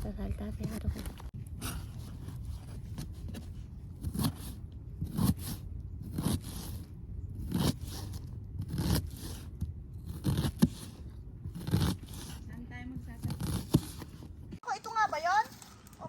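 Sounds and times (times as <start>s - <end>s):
crunching scrapes: 0.5s - 14.6s.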